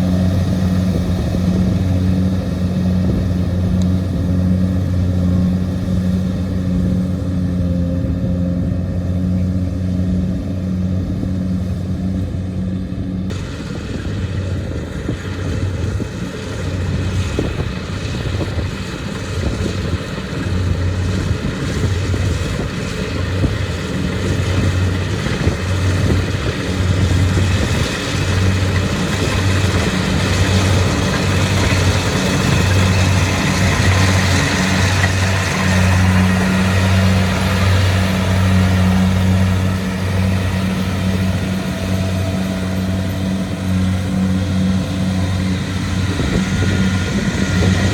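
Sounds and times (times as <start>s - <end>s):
combine harvester diesel engine: 0.0s - 47.9s.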